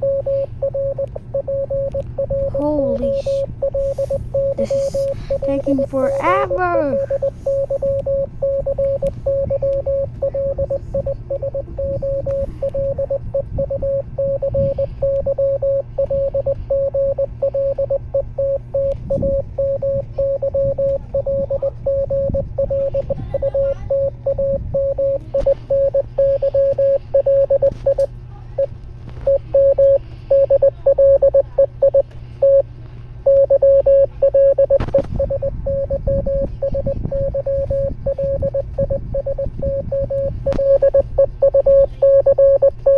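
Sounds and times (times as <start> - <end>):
low steady hum: 0.0 - 42.9
morse code beeps: 0.0 - 42.9.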